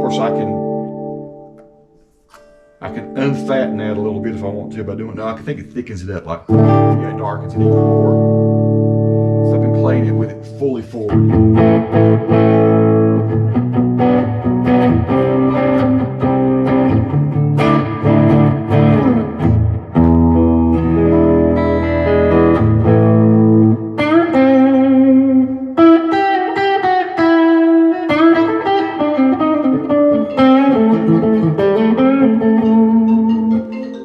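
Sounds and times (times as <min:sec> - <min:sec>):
electric guitar through an amp: 0:00.0 - 0:01.8, 0:02.4 - 0:05.8, 0:06.5 - 0:34.0.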